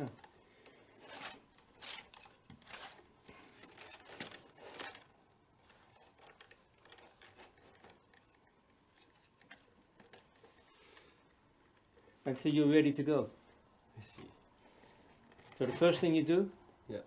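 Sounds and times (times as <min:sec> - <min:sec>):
leather strap rustling and rubbing: 0:00.1 - 0:12.4.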